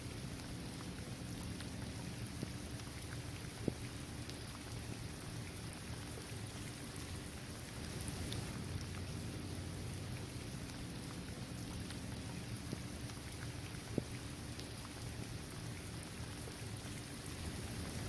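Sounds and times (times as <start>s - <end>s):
steady rain falling: 0.0s - 18.0s
single raindrops ticking: 7.7s - 9.2s.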